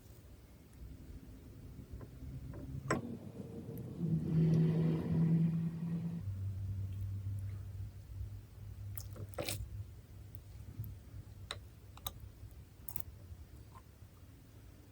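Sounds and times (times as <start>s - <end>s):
low mechanical motor hum: 0.0s - 14.9s.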